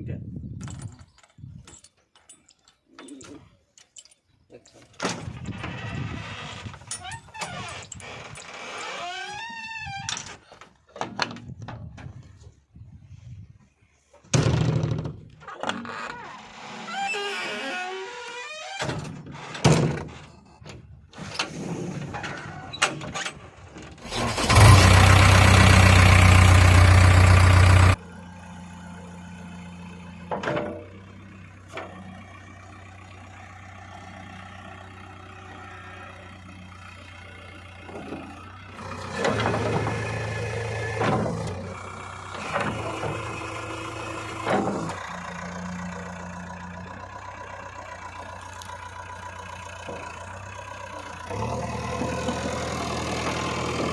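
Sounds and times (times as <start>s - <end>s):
heavy diesel machinery running: 24.0s - 53.9s.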